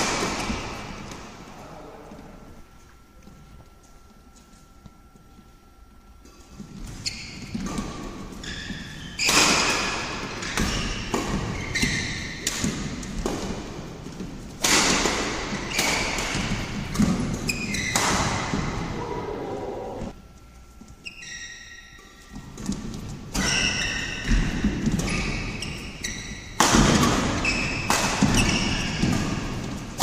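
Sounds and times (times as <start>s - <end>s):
shoes squeaking on court floor: 6.4s - 13.1s, 15.5s - 18.9s, 20.6s - 30.0s
racket hitting shuttlecock: 9.2s - 13.7s, 14.6s - 18.8s, 26.4s - 30.0s.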